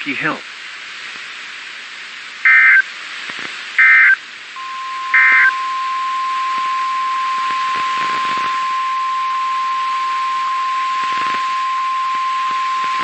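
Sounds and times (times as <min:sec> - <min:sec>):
radio static hiss: 0:00.0 - 0:13.0
steady high alarm tone: 0:03.8 - 0:13.0.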